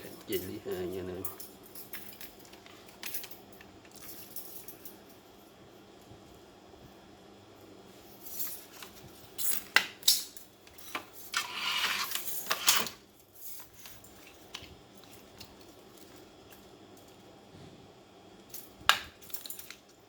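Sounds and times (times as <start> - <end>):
metal parts clicking and clinking: 0.0 - 5.0, 8.3 - 16.2, 18.5 - 20.0
scraping rustle: 11.3 - 13.0.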